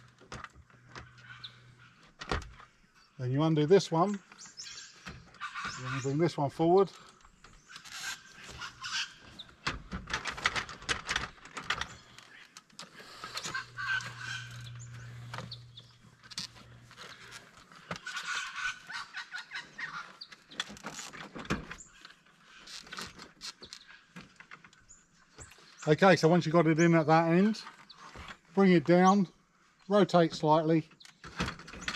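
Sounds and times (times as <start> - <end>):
birds calling: 0.0 - 31.9
low steady hum: 9.1 - 18.9.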